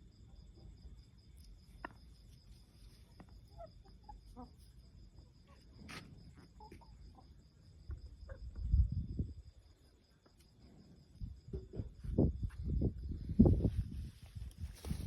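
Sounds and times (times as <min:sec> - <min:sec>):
crickets trilling: 0:00.0 - 0:15.0
chickens clucking and peeping: 0:01.3 - 0:10.5.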